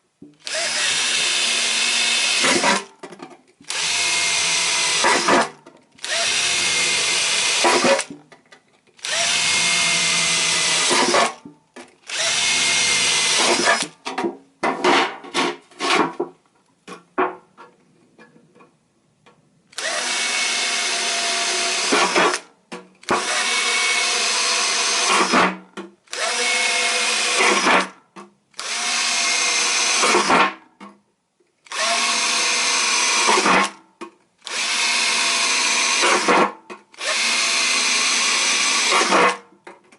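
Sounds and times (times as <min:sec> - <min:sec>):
electric drill whining: 0:00.4 - 0:02.8, 0:03.7 - 0:08.1, 0:09.0 - 0:11.4, 0:12.1 - 0:13.9, 0:19.8 - 0:22.4, 0:23.1 - 0:25.4, 0:26.1 - 0:27.8, 0:28.6 - 0:30.4, 0:31.7 - 0:33.8, 0:34.4 - 0:39.4.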